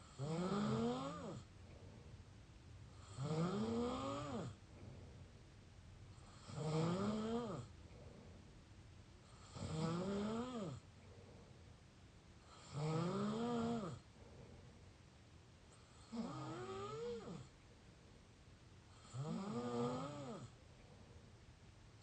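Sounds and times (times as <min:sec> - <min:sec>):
person snoring: 0:00.0 - 0:01.4, 0:03.0 - 0:04.6, 0:06.2 - 0:07.7, 0:09.4 - 0:10.8, 0:12.5 - 0:14.0, 0:15.9 - 0:17.5, 0:19.0 - 0:20.5.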